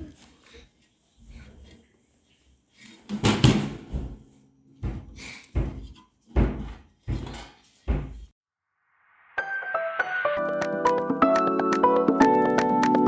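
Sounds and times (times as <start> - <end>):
metal pans and trays knocking: 3.0 - 4.2, 4.8 - 8.3
background music: 9.4 - 13.0.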